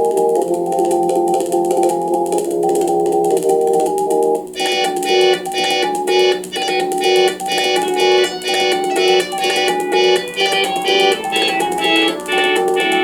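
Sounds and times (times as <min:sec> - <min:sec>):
fm synth music: 0:00.0 - 0:13.0.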